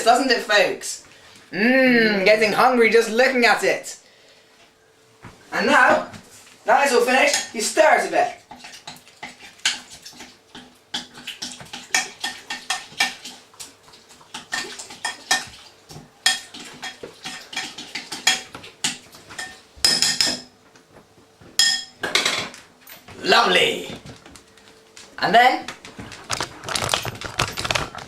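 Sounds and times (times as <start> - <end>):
spoon stirring in a bowl: 8.5 - 20.5.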